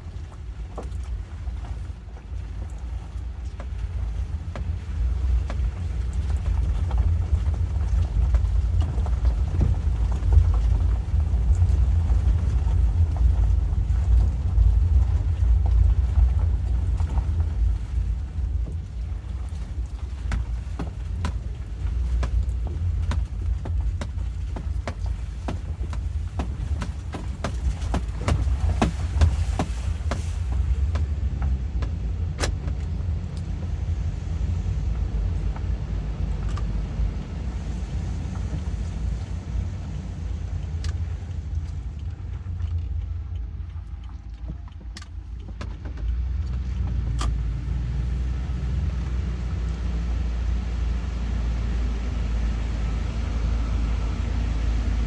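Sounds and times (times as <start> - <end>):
car road and engine rumble: 0.0 - 55.0.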